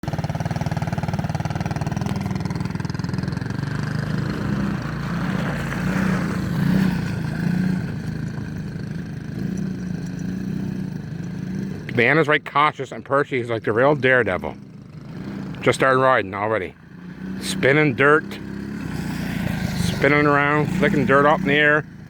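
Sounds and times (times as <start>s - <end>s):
atv engine revving: 0.0s - 22.0s.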